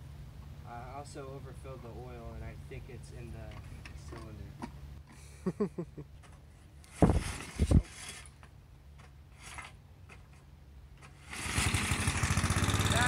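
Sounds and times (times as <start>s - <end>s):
recoil starter pulled: 11.0s - 13.0s
lawnmower engine running loudly: 11.2s - 13.0s.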